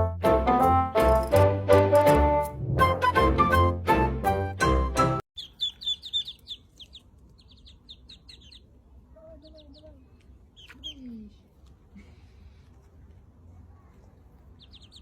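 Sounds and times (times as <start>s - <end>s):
music: 0.0s - 5.2s
small bird chirping: 5.4s - 11.3s, 14.5s - 15.0s.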